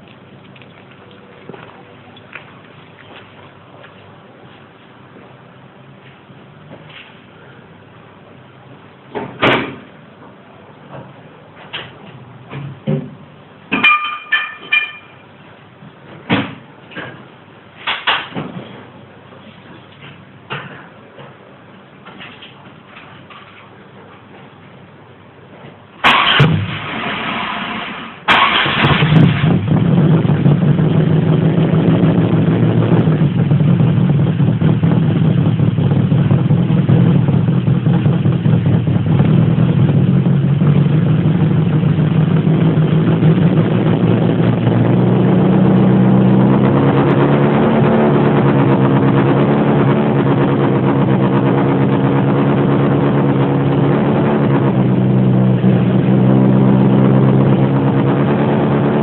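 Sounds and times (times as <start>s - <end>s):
car engine starting and idling: 26.0s - 59.0s.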